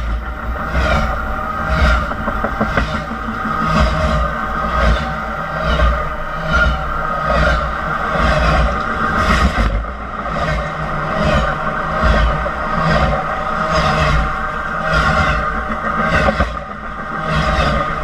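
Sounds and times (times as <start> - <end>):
train rumbling overhead: 0.0 - 18.0
wheels clattering: 0.0 - 18.0
wheels ringing on rails: 0.0 - 18.0.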